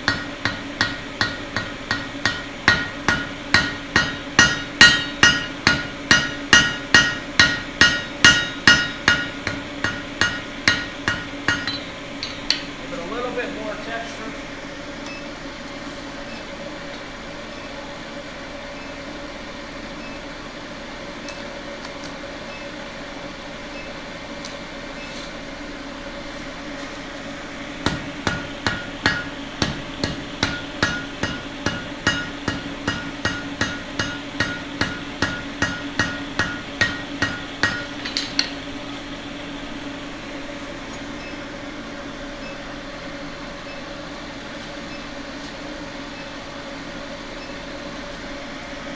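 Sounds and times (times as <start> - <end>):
hammer striking steel on anvil: 0.0 - 12.8, 27.8 - 38.8
mechanical hum: 0.0 - 48.9.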